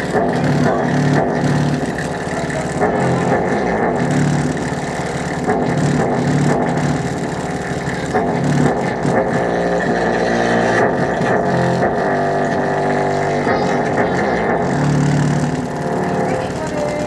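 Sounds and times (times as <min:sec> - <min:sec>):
heavy bass music through subwoofer: 0:00.0 - 0:16.6.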